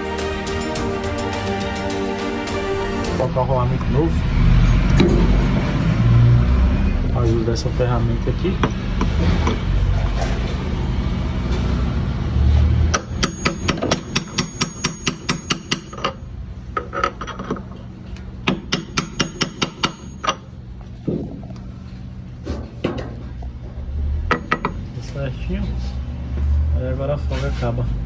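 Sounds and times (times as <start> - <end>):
rapid metal-on-metal taps: 12.9 - 16.2, 18.4 - 20.4.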